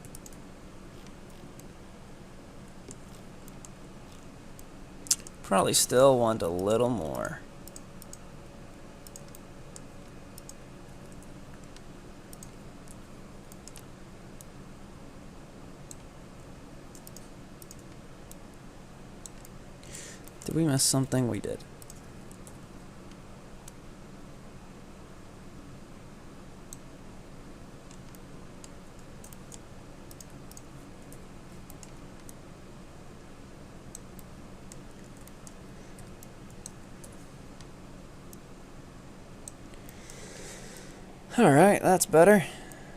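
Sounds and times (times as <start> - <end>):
mouse and keyboard clicks: 0.0 - 0.4, 9.0 - 13.9, 16.9 - 18.0
faint steady hum: 0.0 - 42.9.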